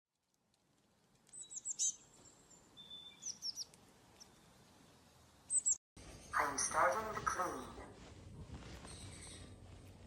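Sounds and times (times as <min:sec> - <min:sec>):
birds chirping: 0:01.3 - 0:07.7.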